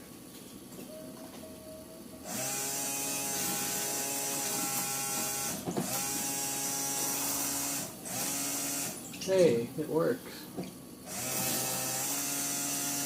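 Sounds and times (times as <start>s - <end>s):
washer pump motor whine: 1.6s - 9.1s, 11.0s - 13.0s.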